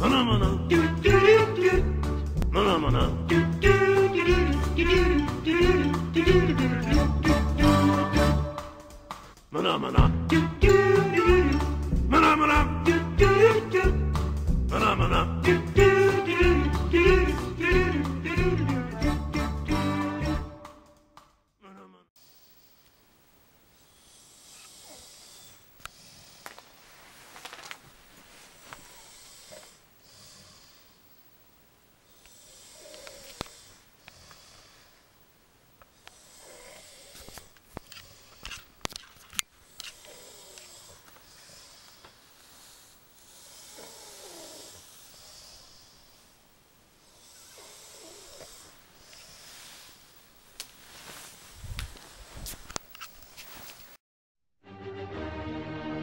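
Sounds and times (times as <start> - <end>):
man snoring: 23.8 - 26.6, 28.8 - 31.1, 32.1 - 35.0, 36.0 - 37.4, 39.6 - 46.4, 47.0 - 49.8
clicking throat rattles: 32.2 - 34.4, 35.8 - 42.2.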